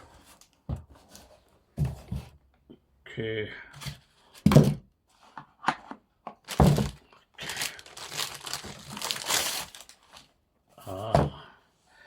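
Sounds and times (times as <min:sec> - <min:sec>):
packaging crinkling: 0:06.4 - 0:10.3.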